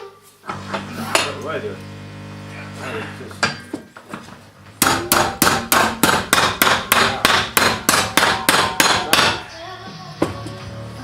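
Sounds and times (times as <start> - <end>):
hammer striking sheet steel: 4.8 - 9.5.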